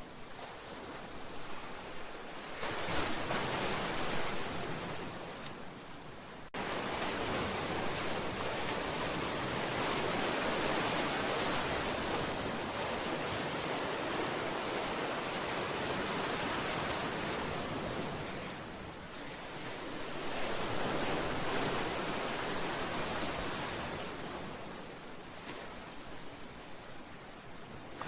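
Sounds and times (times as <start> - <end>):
waves washing against a seawall: 0.7 - 5.8, 6.6 - 26.5.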